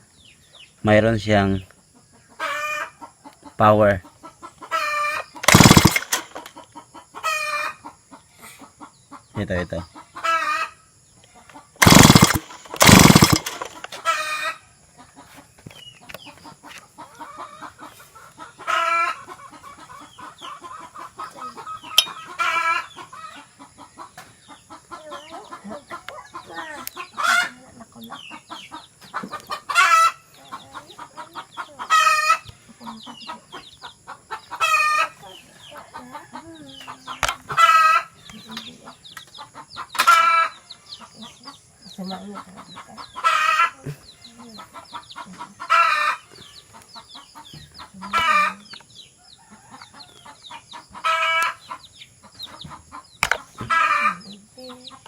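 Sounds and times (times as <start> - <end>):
chickens calling: 0.0 - 55.0.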